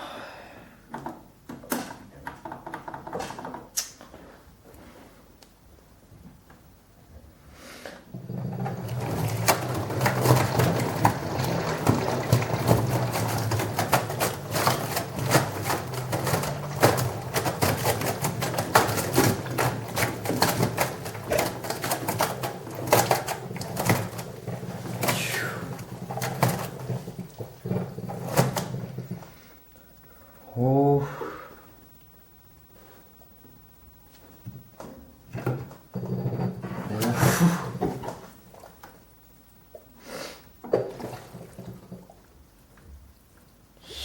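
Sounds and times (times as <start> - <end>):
knocking and rattling: 0.9 - 3.8, 8.1 - 29.2, 34.5 - 37.1
washing machine spinning: 8.1 - 29.6, 34.5 - 39.3, 40.6 - 43.7.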